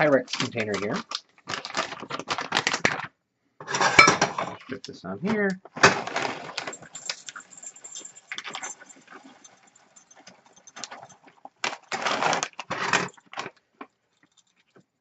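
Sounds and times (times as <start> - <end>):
chocolate chips rattling into glass: 6.5 - 13.3.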